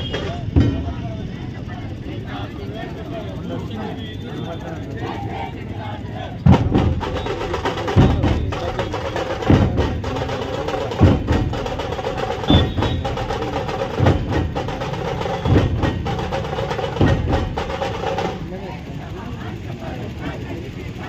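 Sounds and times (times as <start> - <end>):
percussion music with drums: 0.0 - 2.4, 6.4 - 19.2.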